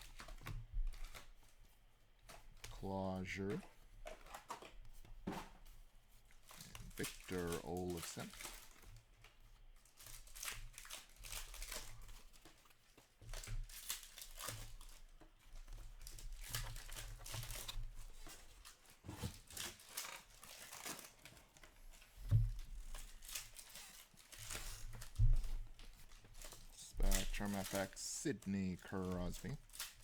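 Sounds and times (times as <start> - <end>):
card pack wrappers crinkling: 6.4 - 9.1, 9.8 - 15.0, 16.0 - 30.0.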